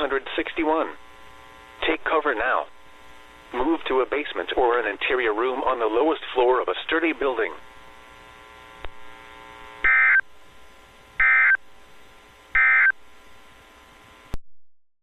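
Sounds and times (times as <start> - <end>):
faint steady radio hum: 0.0 - 14.4
warbling digital data tones: 11.2 - 11.6, 12.6 - 12.9.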